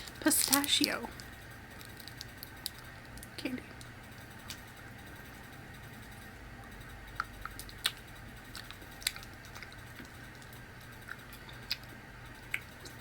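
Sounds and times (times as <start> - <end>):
candy wrapper clicks and rustles: 0.0 - 4.6, 7.5 - 11.9.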